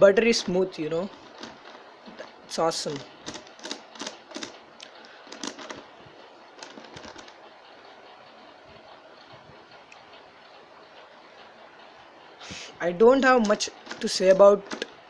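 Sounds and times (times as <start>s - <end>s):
plastic puzzle faces clicking: 3.2s - 5.9s, 6.6s - 7.4s, 13.2s - 15.0s.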